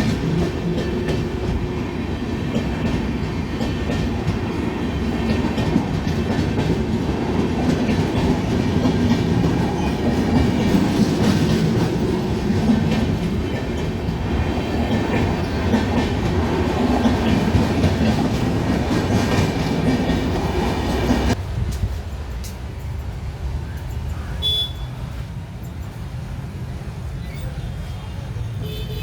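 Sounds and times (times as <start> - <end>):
train wheels rumbling on rails: 0.0 - 29.0.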